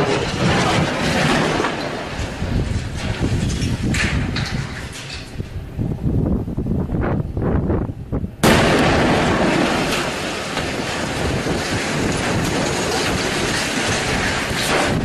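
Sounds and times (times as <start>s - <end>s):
heavy rumble: 0.0s - 15.0s
loud explosion blast: 8.4s - 15.0s.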